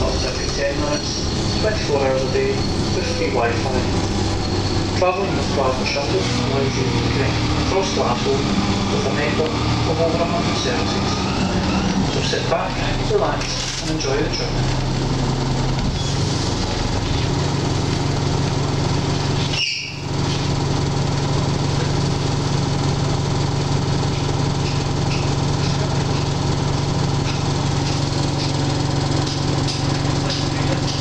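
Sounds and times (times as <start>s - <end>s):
high-pitched screech: 0.0s - 12.2s
bus engine low hum: 0.0s - 31.0s.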